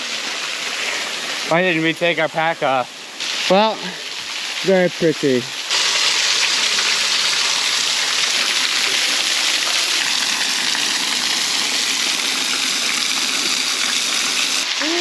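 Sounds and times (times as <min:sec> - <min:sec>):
waterfall rushing: 0:05.7 - 0:15.0.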